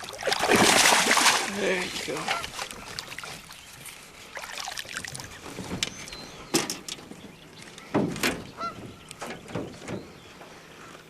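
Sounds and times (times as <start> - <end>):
knocks and thumps in a boat: 5.0 - 10.3.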